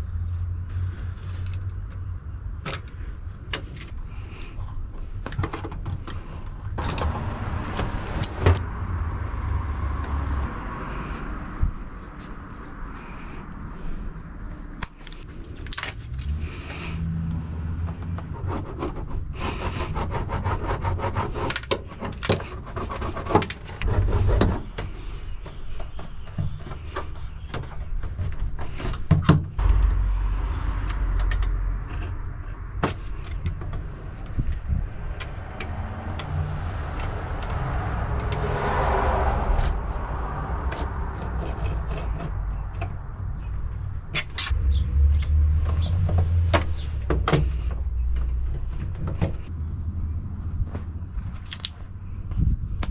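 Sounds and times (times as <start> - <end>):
scraping and rubbing: 3.0 - 8.6, 10.5 - 17.0, 17.8 - 44.6.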